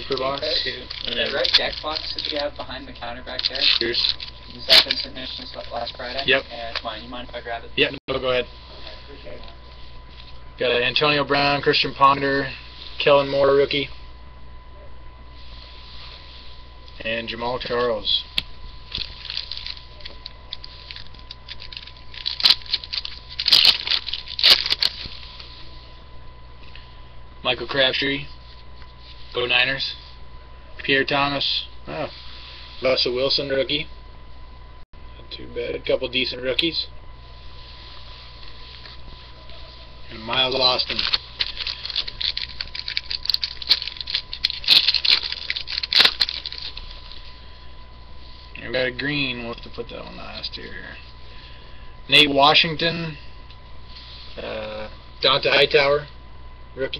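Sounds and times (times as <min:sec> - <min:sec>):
cards rustling and clicking: 0:00.0 - 0:02.6, 0:18.9 - 0:25.5, 0:40.5 - 0:47.0
foil pack crinkling: 0:00.0 - 0:06.9, 0:18.8 - 0:25.5, 0:40.1 - 0:47.4.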